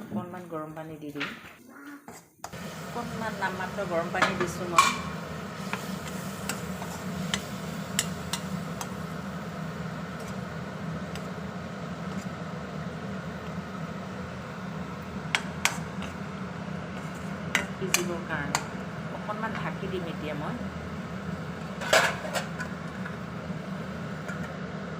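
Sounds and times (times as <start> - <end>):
steady low hum: 2.4 - 24.9
spatula scraping a cooking pan: 5.6 - 9.0, 15.3 - 16.2, 16.9 - 17.8.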